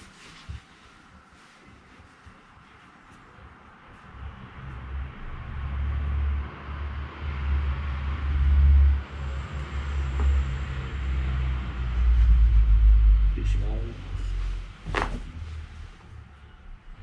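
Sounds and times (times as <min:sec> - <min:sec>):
traffic engine rumble and road noise: 0:03.4 - 0:17.0.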